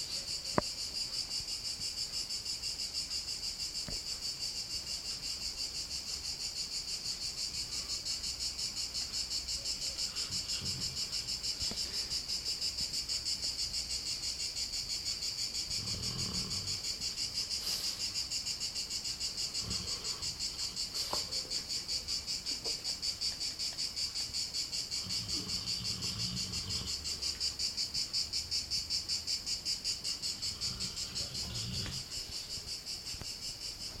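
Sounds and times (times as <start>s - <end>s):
crickets chirping: 0.0s - 34.0s
pet snoring: 9.9s - 12.0s, 15.6s - 18.0s, 19.4s - 21.4s, 24.8s - 27.3s, 30.3s - 32.3s.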